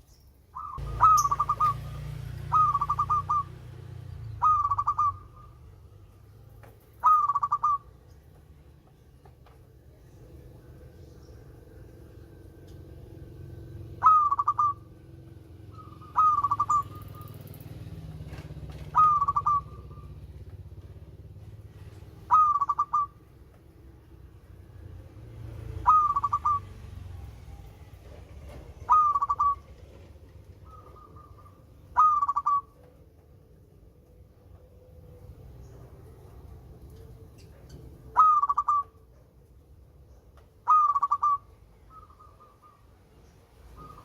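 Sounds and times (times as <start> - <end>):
dove cooing: 0.6 - 6.1, 7.0 - 8.0, 13.0 - 21.2, 21.8 - 23.4, 25.2 - 33.0, 34.5 - 39.2, 40.6 - 42.9, 43.6 - 44.0.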